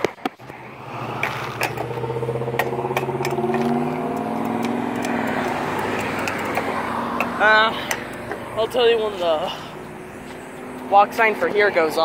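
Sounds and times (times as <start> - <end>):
vehicle engine passing by: 0.4 - 12.0
sharp clicks: 1.2 - 8.4.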